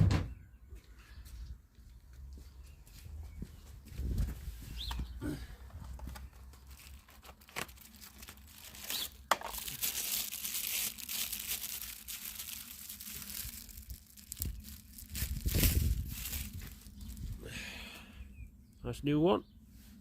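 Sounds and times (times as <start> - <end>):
plastic packaging crinkling: 6.1 - 17.4.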